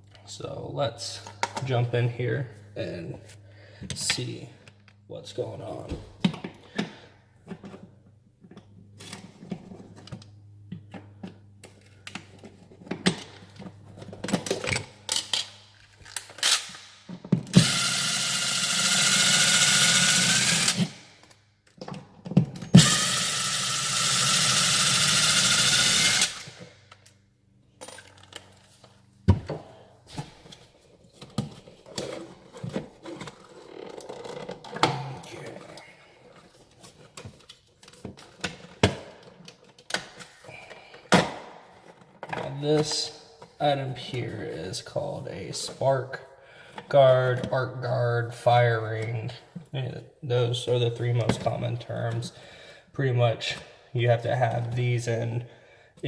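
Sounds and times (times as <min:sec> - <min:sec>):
power drill whining: 0:17.6 - 0:21.0, 0:22.8 - 0:26.6.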